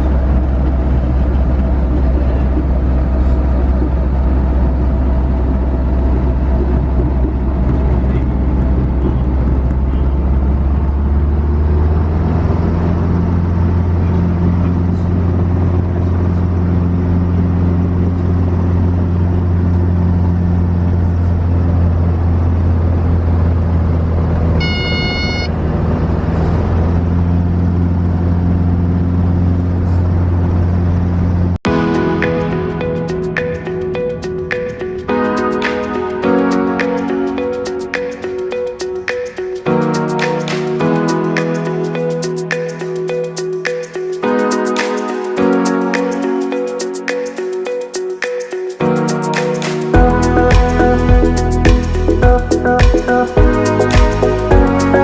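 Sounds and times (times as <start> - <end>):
short high electronic beep: 24.6 - 25.6.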